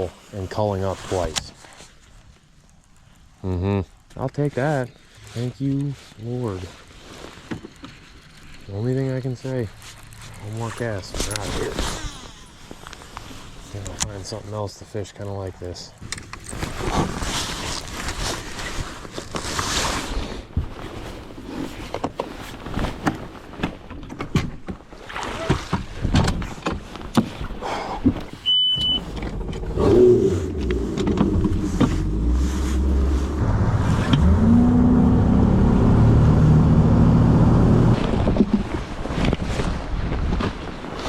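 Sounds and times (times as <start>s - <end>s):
short high beep: 28.4s - 29.0s
outboard motor running: 29.1s - 38.3s.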